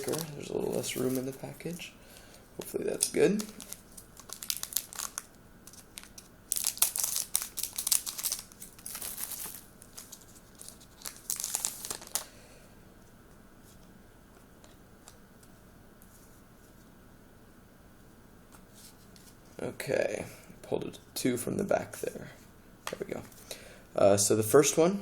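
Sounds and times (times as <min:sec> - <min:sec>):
plastic wrapper crinkling and tearing: 0:00.0 - 0:01.4, 0:02.6 - 0:12.3.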